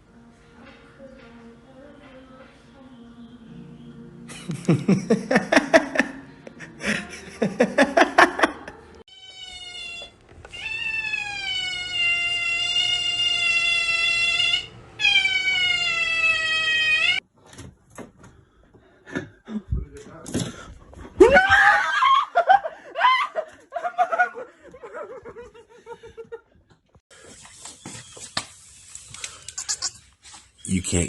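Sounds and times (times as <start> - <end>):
cat yowling: 9.1 - 17.2.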